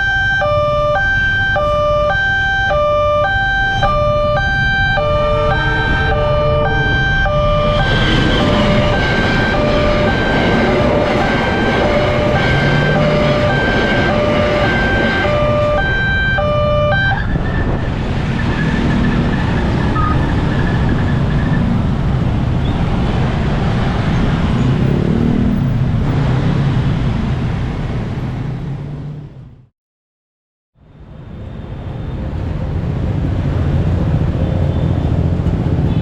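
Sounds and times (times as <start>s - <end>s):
level crossing alarm tones: 0.0s - 21.0s
road traffic engines: 0.0s - 29.7s, 30.8s - 36.0s.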